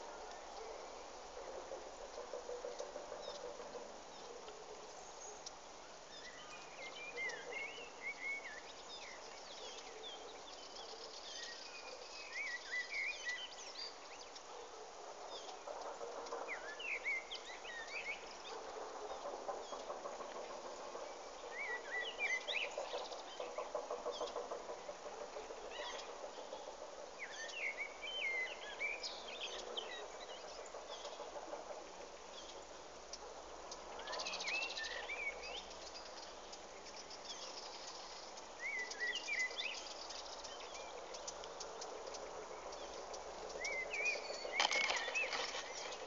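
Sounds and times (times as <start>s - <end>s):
small birds chirping: 32.0s - 46.0s.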